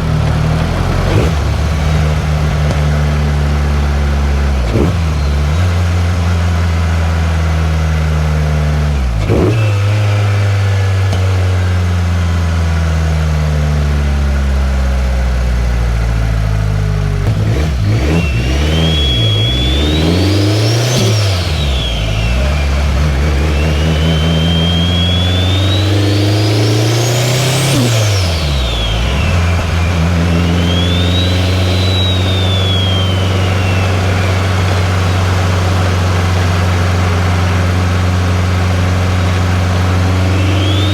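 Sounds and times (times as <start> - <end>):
car engine running: 0.0 - 40.9
high turbo whistle: 17.4 - 40.9.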